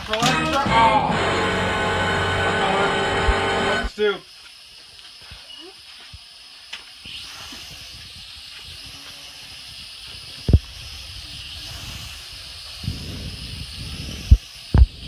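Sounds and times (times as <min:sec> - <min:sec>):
drone propellers whirring: 0:00.2 - 0:03.9.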